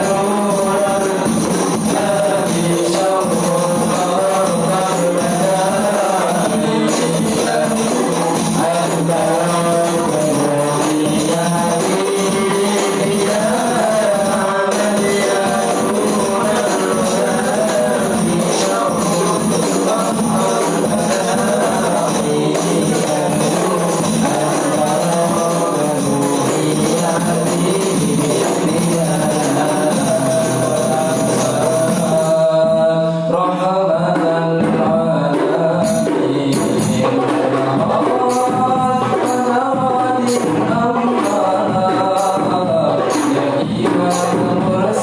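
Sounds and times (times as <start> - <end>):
frame drums in steady rhythm: 0.0 - 45.0
group singing: 0.0 - 45.0.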